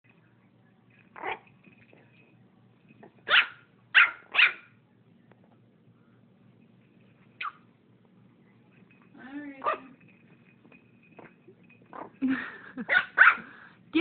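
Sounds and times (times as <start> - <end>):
puppy barking: 1.2 - 1.4, 3.2 - 4.7, 7.4 - 7.6, 9.6 - 10.0, 12.9 - 13.5.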